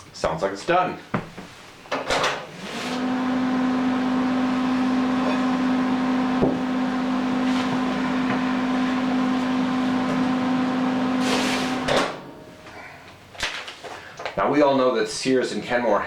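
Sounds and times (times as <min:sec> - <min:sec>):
microwave oven humming: 0:02.6 - 0:12.7.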